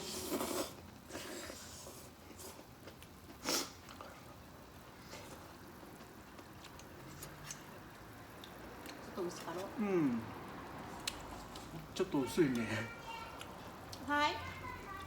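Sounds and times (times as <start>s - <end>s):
person blowing and slurping broth: 0.0s - 2.6s, 3.4s - 3.8s.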